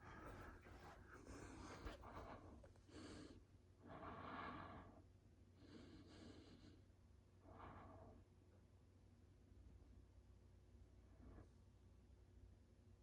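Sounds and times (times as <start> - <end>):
faint breaths: 0.0 - 8.3.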